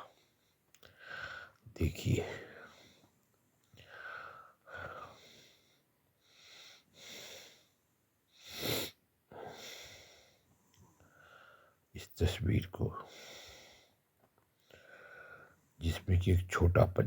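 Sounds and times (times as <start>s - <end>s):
person breathing close to microphone: 0.0s - 1.6s, 3.8s - 11.8s, 13.0s - 14.0s, 14.6s - 15.6s.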